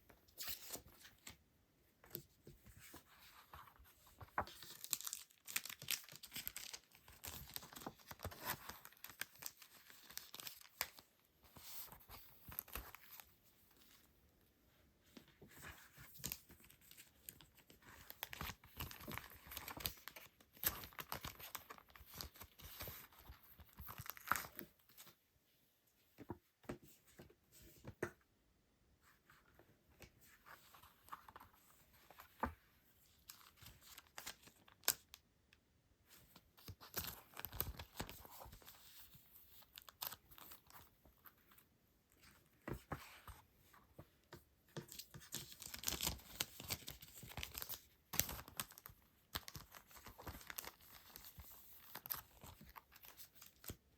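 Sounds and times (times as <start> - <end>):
plastic and paper crinkling: 2.1 - 13.3, 15.4 - 25.1, 44.8 - 53.9.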